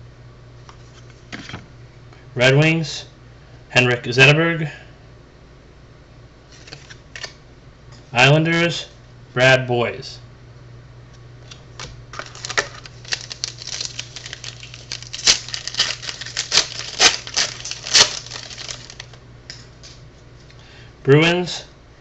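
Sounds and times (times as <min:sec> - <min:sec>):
low electrical hum: 0:00.0 - 0:22.0
trading cards clicking and rustling: 0:11.4 - 0:19.2.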